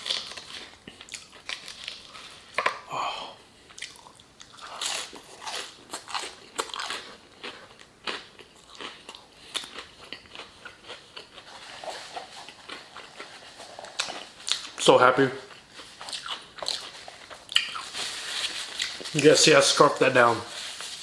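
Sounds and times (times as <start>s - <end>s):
person chewing crispy fried chicken: 0.0s - 2.8s, 3.6s - 14.8s, 15.4s - 19.2s.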